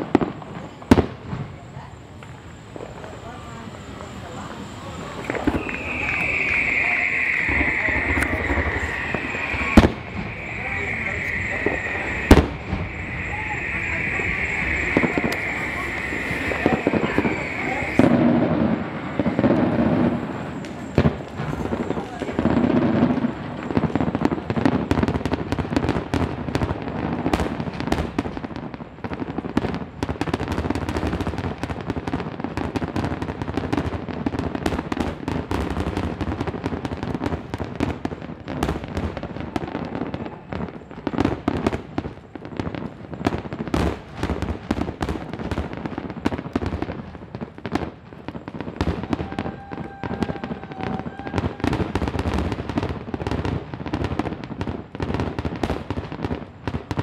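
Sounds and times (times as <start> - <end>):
fireworks bursting and crackling: 0.0 - 57.0
faint steady whistle: 1.6 - 23.8, 48.9 - 52.1.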